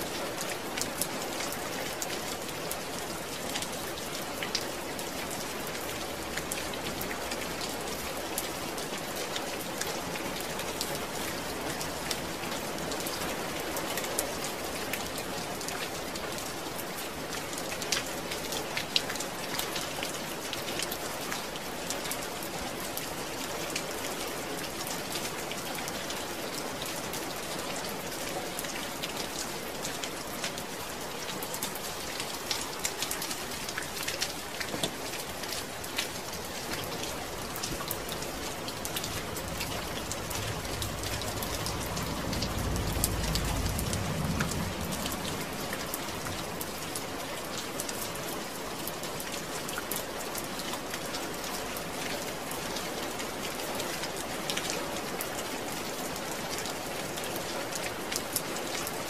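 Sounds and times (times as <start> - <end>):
steady rain falling: 0.0 - 59.0
low rumble: 38.3 - 46.3.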